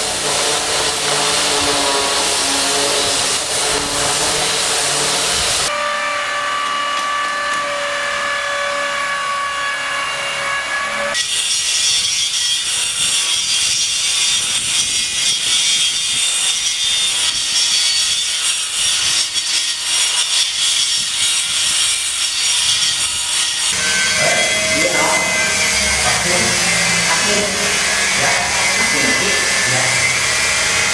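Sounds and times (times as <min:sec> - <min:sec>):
harsh grinding and scraping: 0:00.0 - 0:05.7, 0:23.4 - 0:30.9
power tool whining: 0:00.0 - 0:11.2, 0:20.8 - 0:30.9.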